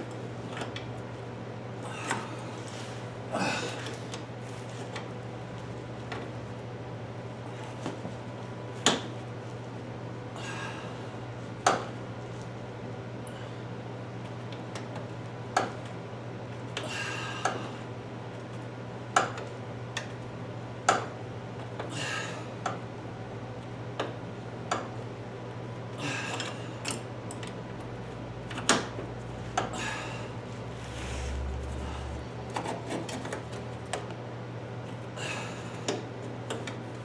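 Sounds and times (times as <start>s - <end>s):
steady low hum: 20.2s - 37.0s.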